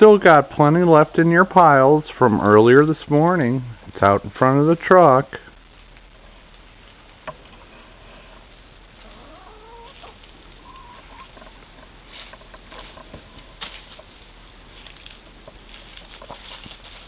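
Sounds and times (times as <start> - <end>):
hens clucking softly: 9.0 - 11.7.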